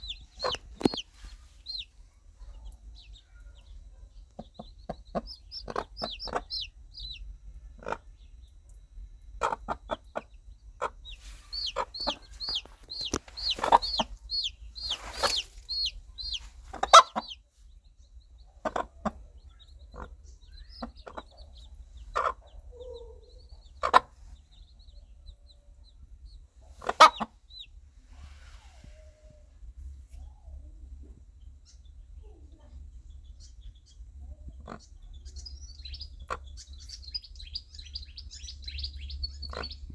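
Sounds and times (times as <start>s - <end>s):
hen clucking: 0.0s - 8.6s, 9.3s - 29.4s, 33.4s - 39.9s
chicks peeping: 0.0s - 39.9s.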